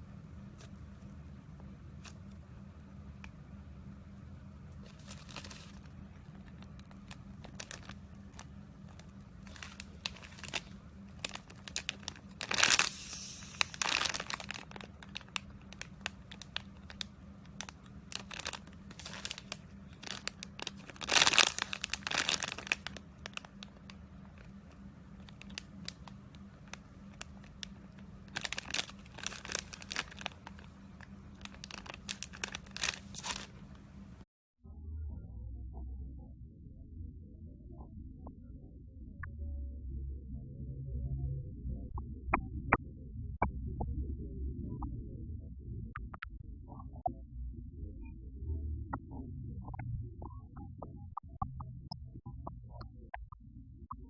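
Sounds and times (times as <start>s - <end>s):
crinkling and crackling clicks: 0.0s - 2.5s, 4.6s - 34.3s.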